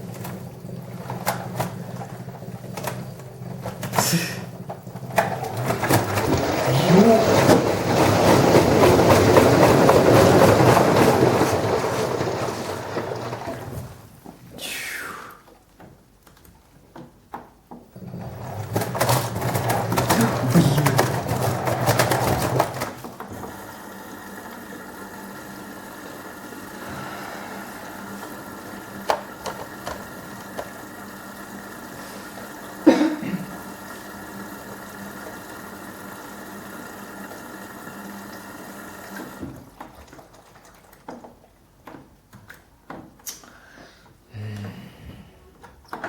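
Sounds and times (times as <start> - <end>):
washing machine banging: 5.1 - 14.2.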